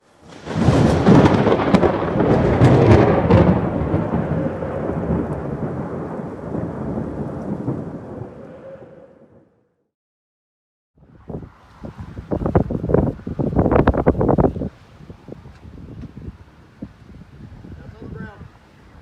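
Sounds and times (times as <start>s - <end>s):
thunder crackling and rumbling: 0.0s - 9.7s, 11.2s - 18.5s.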